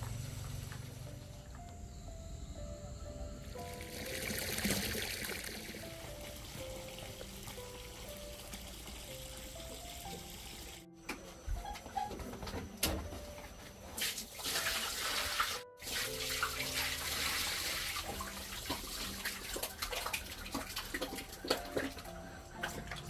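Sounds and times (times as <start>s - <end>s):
water running and splashing: 3.7s - 10.8s, 14.0s - 23.0s.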